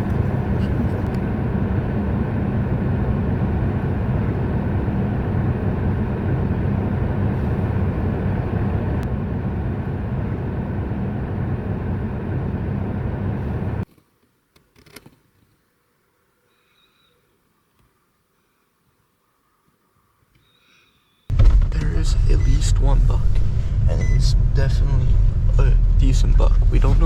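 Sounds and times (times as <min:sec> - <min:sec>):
car driving rumble: 0:00.0 - 0:13.8, 0:21.3 - 0:27.0.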